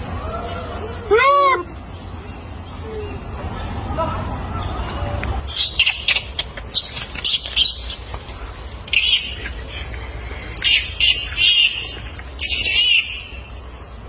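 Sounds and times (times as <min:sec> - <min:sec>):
baby monkey squealing: 0:05.4 - 0:08.1, 0:08.9 - 0:13.5.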